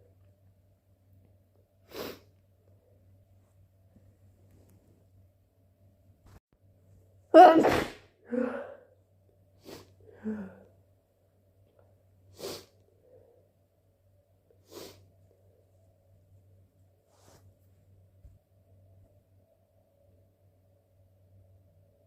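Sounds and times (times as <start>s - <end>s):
person sneezing: 7.4s - 8.8s.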